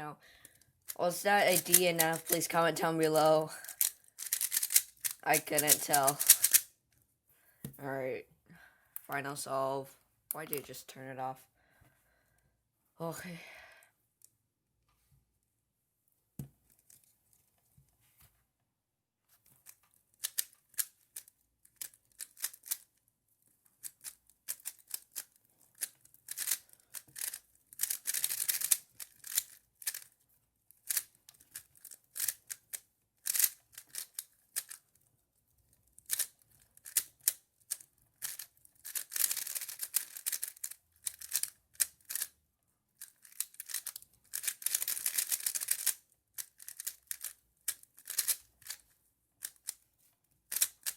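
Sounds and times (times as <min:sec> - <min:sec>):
plastic puzzle cube clicking: 0:01.4 - 0:06.7, 0:19.6 - 0:22.9, 0:23.8 - 0:30.2, 0:30.8 - 0:34.8, 0:36.0 - 0:42.3, 0:43.0 - 0:49.8, 0:50.5 - 0:50.9.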